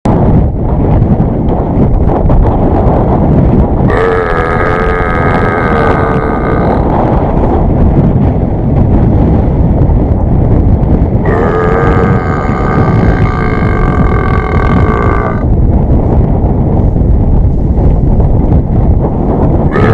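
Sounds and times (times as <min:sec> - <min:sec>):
wind noise on microphone: 0:00.0 - 0:19.9
long drawn-out vocal calls: 0:03.9 - 0:06.9, 0:11.2 - 0:15.5.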